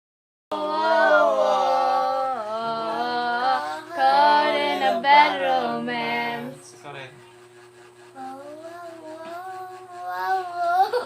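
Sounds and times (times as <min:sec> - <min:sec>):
voices singing in parts: 0:00.5 - 0:06.7.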